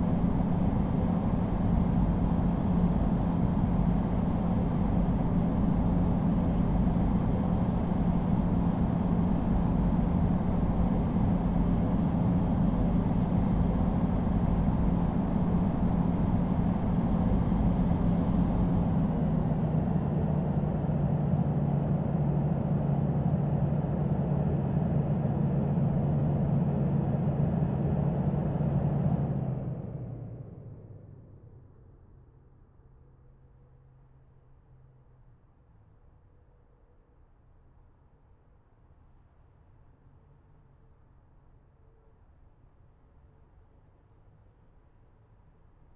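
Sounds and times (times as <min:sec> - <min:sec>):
jet engine cabin roar: 0:00.0 - 0:22.8
faint high whine: 0:00.0 - 0:23.0
low hum: 0:00.0 - 0:31.5.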